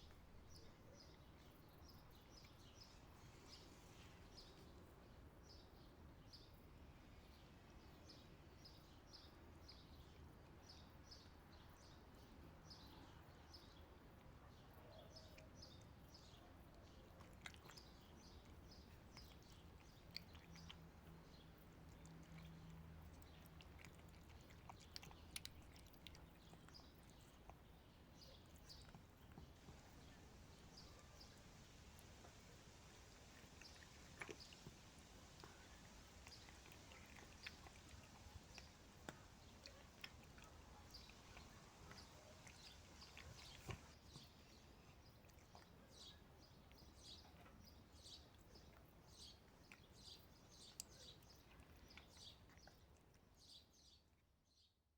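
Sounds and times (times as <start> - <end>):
cat chewing dry food: 15.3 - 53.7.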